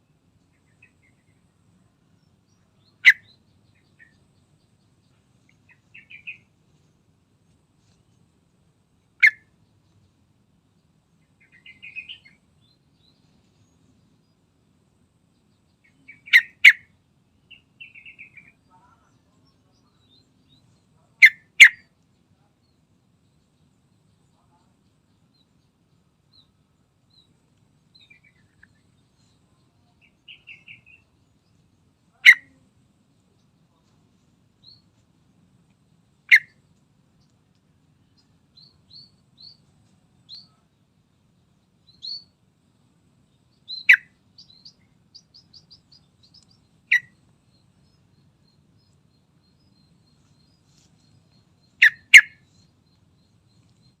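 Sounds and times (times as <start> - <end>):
soft high bird chirps: 0.0 - 6.9, 9.2 - 10.2, 10.8 - 14.4, 15.3 - 40.8, 41.4 - 42.5, 43.2 - 54.0
bird calling sharp notes: 9.2 - 9.5, 51.8 - 52.5.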